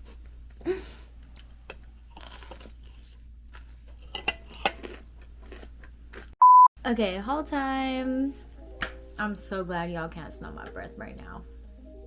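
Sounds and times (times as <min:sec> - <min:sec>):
chewing crunchy fried food: 0:01.2 - 0:06.4.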